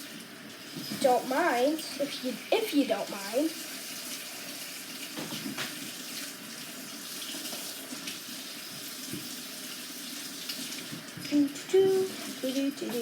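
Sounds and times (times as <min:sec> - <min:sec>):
tap running into a sink: 0:00.0 - 0:01.2, 0:04.1 - 0:13.0.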